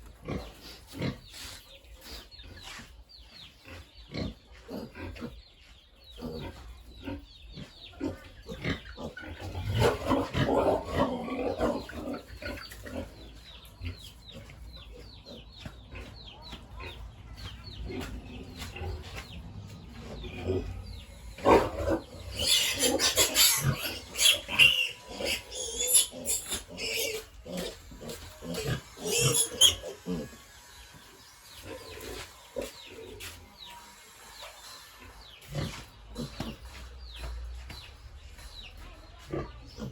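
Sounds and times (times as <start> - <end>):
pigs grunting: 0.0 - 2.7, 3.5 - 5.5, 6.1 - 19.4, 20.0 - 30.5, 35.0 - 37.0, 39.2 - 39.9
pigs squealing: 8.0 - 13.2, 20.3 - 33.3.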